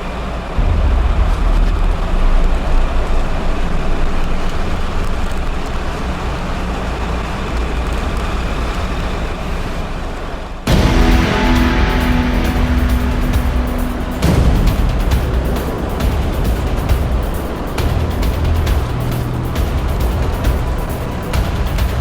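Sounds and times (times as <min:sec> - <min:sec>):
vehicle road and wind noise: 0:00.0 - 0:10.8.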